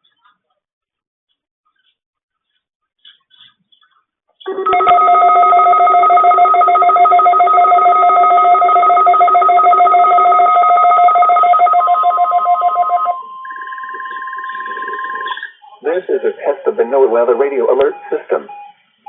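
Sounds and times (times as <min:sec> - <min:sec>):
electronic alert trill: 0:04.5 - 0:15.6.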